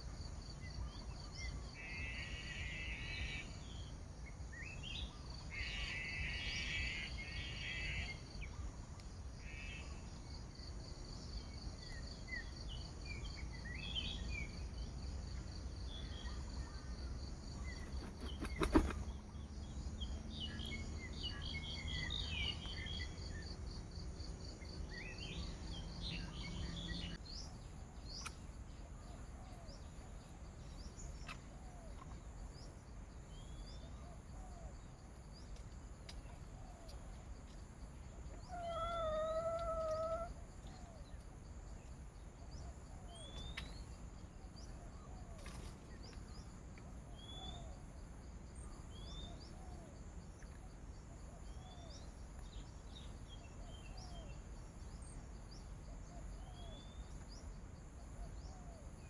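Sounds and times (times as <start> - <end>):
small birds chirping: 15.8 - 47.7
buzzy insect calls: 17.4 - 19.2.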